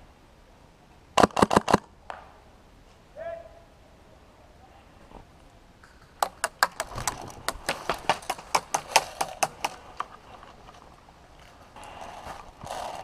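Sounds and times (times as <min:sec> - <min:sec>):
airsoft gun firing sharp snaps: 0:01.2 - 0:02.2.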